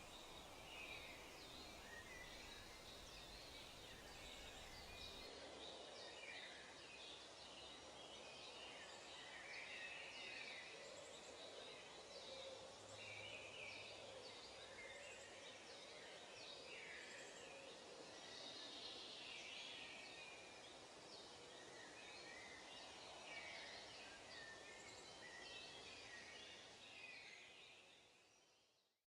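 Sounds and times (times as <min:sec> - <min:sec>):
background hiss: 0:00.0 - 0:05.3
birds chirping: 0:00.0 - 0:05.3.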